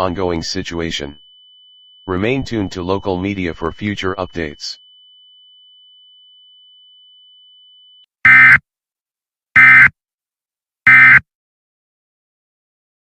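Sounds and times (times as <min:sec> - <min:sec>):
faint steady high tone: 0:00.0 - 0:08.4.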